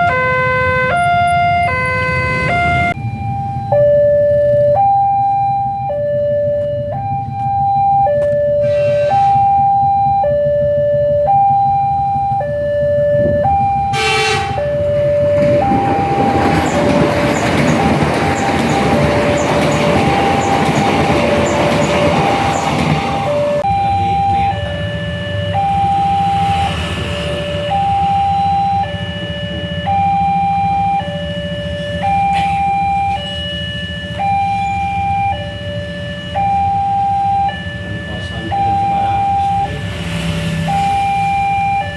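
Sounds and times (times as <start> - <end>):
two-tone warning siren: 0.0 - 41.9
passing train running noise: 8.2 - 9.8, 13.0 - 41.9
train horn: 8.6 - 9.6, 13.9 - 16.7.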